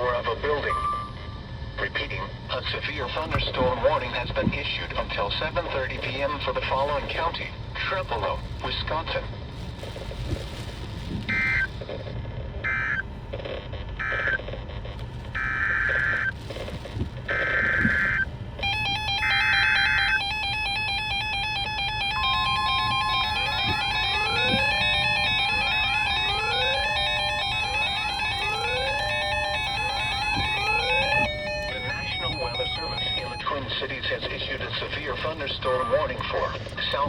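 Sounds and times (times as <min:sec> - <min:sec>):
wind rumble on microphone: 0:09.2 - 0:12.6, 0:14.9 - 0:18.6
harsh buzzing data bursts: 0:15.3 - 0:16.4, 0:17.3 - 0:33.6
electronic alert tones: 0:17.3 - 0:33.6.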